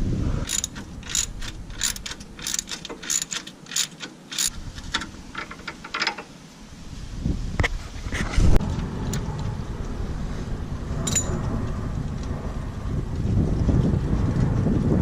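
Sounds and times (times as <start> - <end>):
ratchet wrench clicking: 0.4 - 6.2, 11.0 - 11.4.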